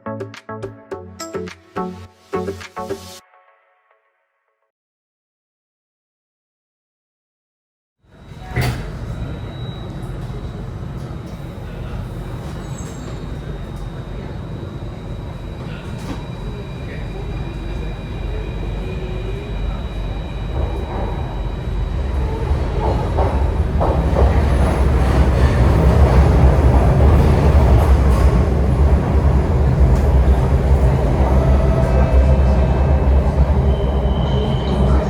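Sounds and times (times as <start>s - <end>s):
metro train rumbling: 8.1s - 35.0s
faint wheel squeal: 11.7s - 20.9s, 31.4s - 35.0s.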